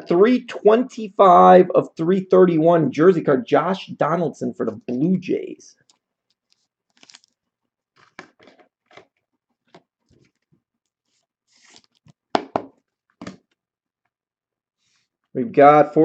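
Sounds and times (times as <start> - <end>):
trading cards rustling and clicking: 5.8 - 7.4, 8.0 - 12.5.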